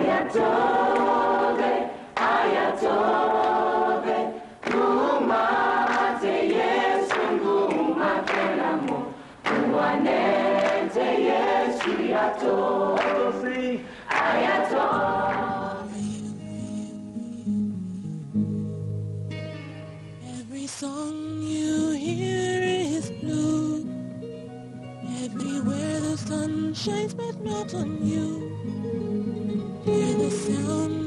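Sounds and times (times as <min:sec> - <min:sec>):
choir singing a cappella: 0:00.0 - 0:16.9, 0:29.9 - 0:31.0.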